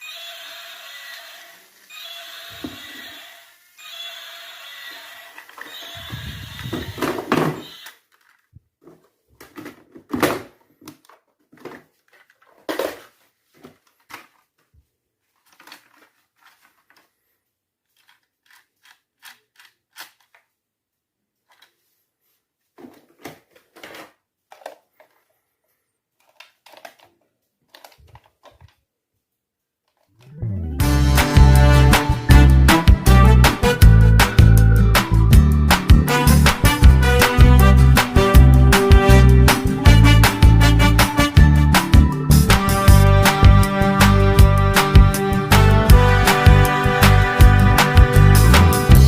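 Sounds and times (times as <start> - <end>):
plastic toys clicking and knocking: 6.7 - 14.7, 15.4 - 17.1, 17.8 - 20.5, 21.4 - 21.8, 22.9 - 25.2, 26.2 - 28.8.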